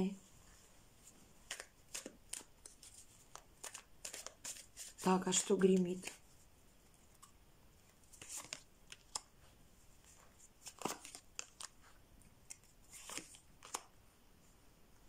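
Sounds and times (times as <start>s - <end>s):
cards rustling and clicking: 1.4s - 6.2s, 7.0s - 9.4s, 10.0s - 13.9s.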